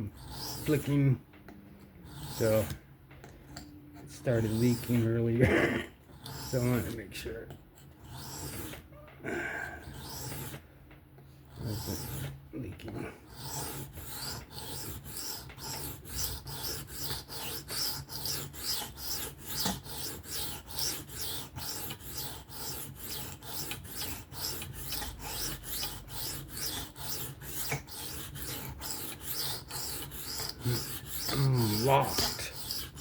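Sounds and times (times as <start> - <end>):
knife scraping on sharpening stone: 7.8 - 8.8, 13.3 - 33.0.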